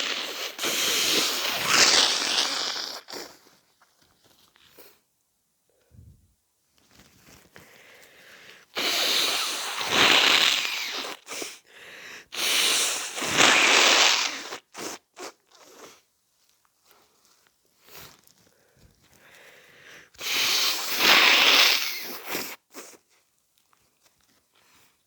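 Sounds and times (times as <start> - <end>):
short snuffles: 0.0 - 3.4
nose blowing into tissue: 0.0 - 3.6, 8.2 - 16.1, 19.9 - 23.0.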